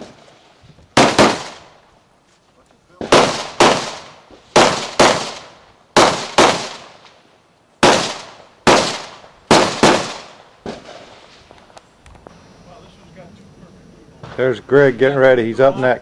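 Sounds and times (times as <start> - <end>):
rifle shots echoing: 1.0 - 1.8, 2.9 - 7.1, 7.8 - 11.1.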